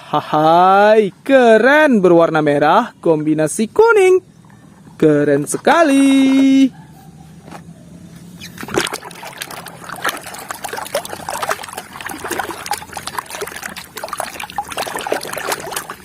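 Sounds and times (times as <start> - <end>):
water splashing and trickling: 8.5 - 16.0.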